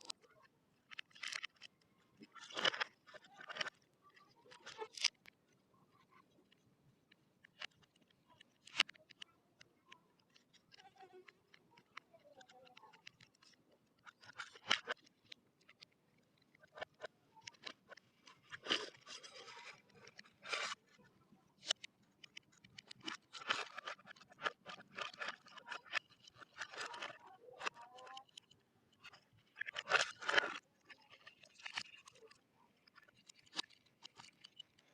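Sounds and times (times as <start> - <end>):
toy and box scraping: 0.9 - 5.2, 16.6 - 34.9
sharp plastic clicks: 6.4 - 34.9.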